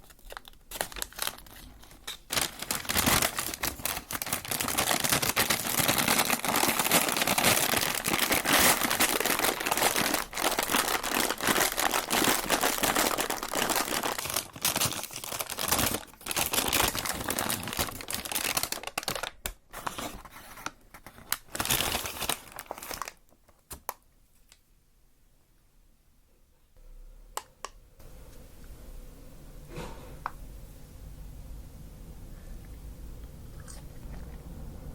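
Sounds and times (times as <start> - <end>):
paper packaging crumpling: 0.0 - 23.3.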